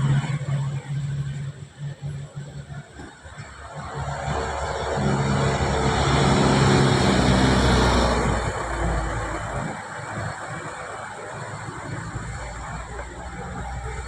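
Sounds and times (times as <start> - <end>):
vehicle passing by: 2.7 - 11.0.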